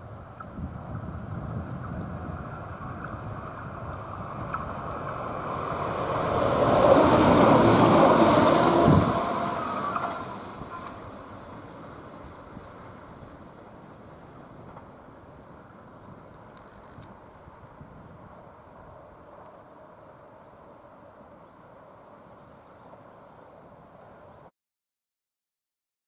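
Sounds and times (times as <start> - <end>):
railcar passing by: 0.0 - 24.5.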